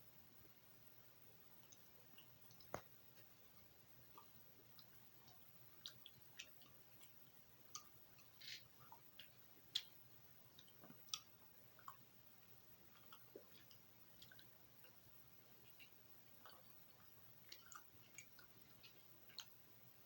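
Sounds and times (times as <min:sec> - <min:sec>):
gum chewing mouth clicks: 0:04.1 - 0:15.0, 0:15.6 - 0:19.6.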